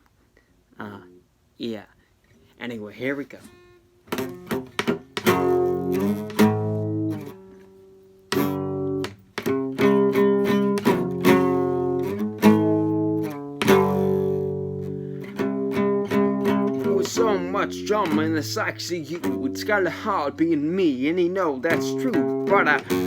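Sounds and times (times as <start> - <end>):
guitar chords strummed: 3.4 - 23.0.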